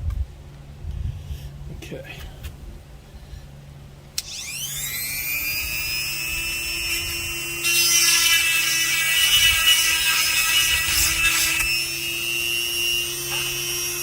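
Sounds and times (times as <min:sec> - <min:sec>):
sharpener motor whine: 0:04.2 - 0:14.0
grinding stone on chain: 0:07.7 - 0:11.7.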